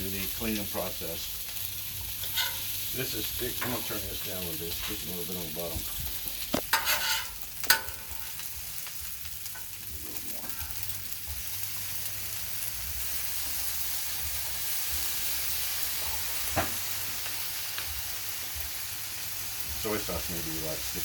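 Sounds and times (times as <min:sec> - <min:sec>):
rice sizzling on a griddle: 0:00.0 - 0:21.0.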